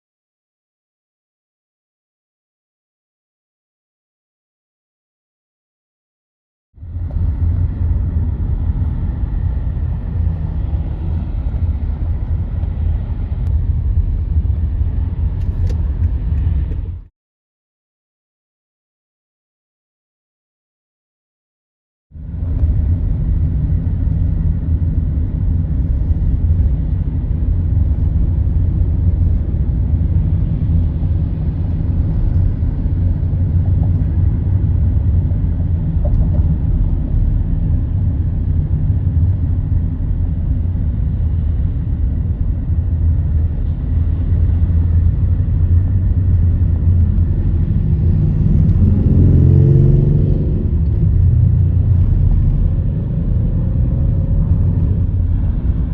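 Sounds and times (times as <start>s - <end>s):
low vehicle rumble: 6.8s - 17.1s, 22.1s - 55.9s.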